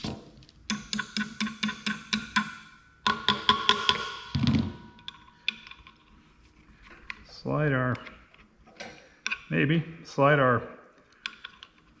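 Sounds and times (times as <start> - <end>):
hammer tapping on steel: 0.7 - 4.3.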